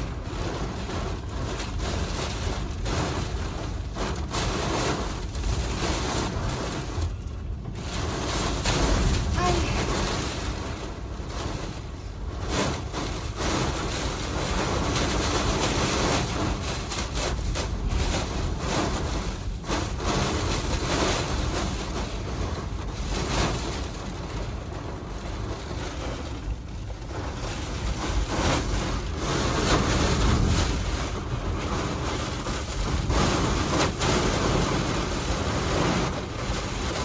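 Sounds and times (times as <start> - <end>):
strong gusting wind: 8.2 - 16.6.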